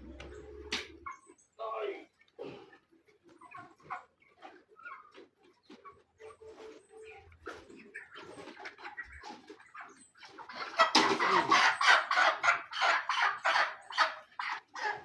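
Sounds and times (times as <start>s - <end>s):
chickens clucking and squawking: 0.0s - 15.0s.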